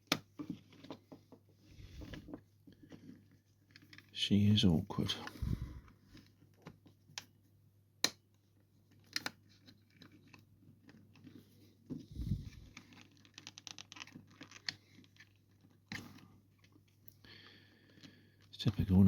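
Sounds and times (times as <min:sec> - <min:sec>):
plastic clicks and scraping: 0:08.9 - 0:17.0.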